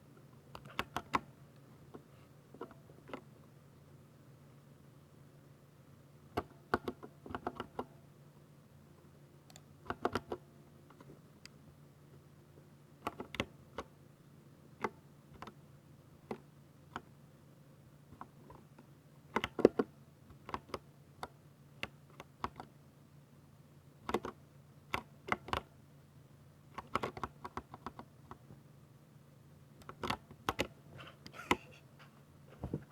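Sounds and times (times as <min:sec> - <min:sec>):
mechanical keyboard typing: 0:09.8 - 0:10.4, 0:26.8 - 0:28.1, 0:29.8 - 0:30.7.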